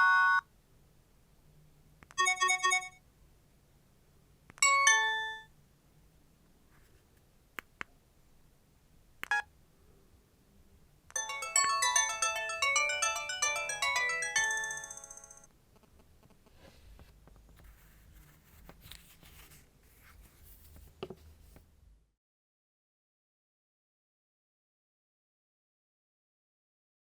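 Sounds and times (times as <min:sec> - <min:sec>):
polyphonic phone ringtone: 0:00.0 - 0:00.4, 0:02.2 - 0:03.0, 0:04.6 - 0:05.5, 0:11.2 - 0:15.5.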